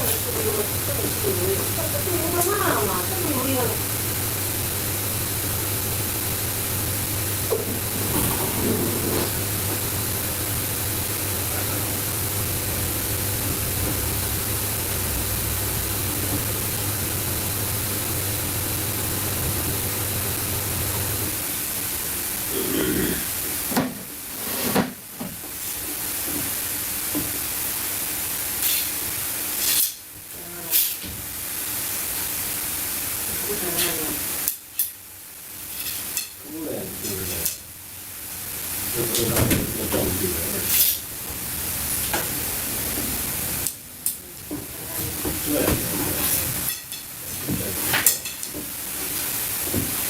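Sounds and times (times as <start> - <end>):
steady hiss: 0.0 - 50.0
low hum: 3.0 - 21.4.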